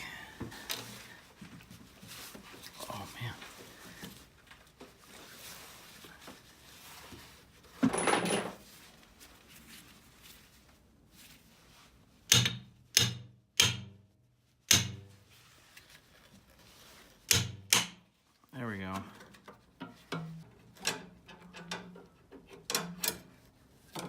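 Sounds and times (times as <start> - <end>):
scraping rustle: 0.8 - 12.1.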